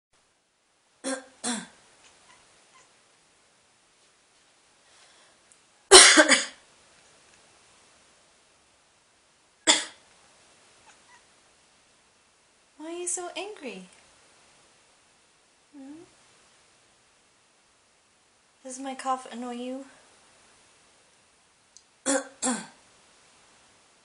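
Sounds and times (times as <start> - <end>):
person coughing: 1.0 - 1.8, 5.9 - 6.6, 9.7 - 10.0, 22.1 - 22.8.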